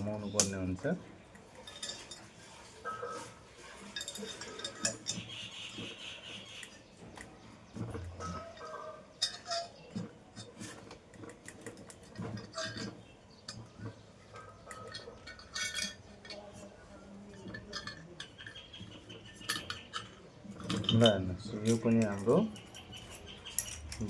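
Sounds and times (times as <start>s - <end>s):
metallic clinks of hand tools: 17.4s - 24.0s.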